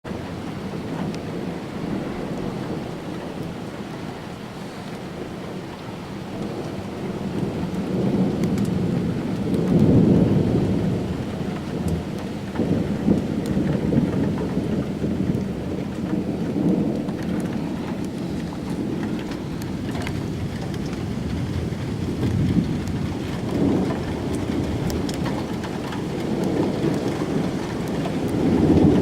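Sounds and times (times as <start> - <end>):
raindrop ticks: 0.1 - 4.2, 4.8 - 29.0
thunder rumbling: 0.1 - 29.0
rain hissing: 0.2 - 29.0.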